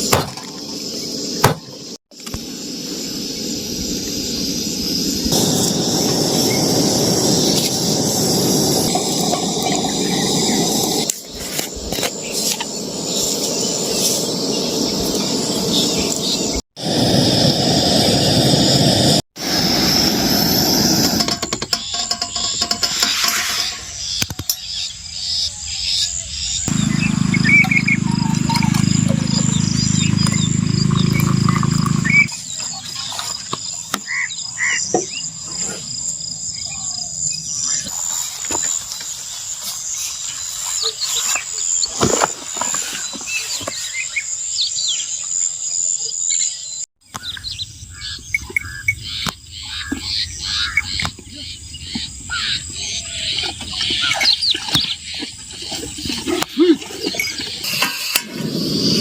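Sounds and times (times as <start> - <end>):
insects droning: 0.0 - 46.8, 47.5 - 59.0
low hum: 26.7 - 32.3.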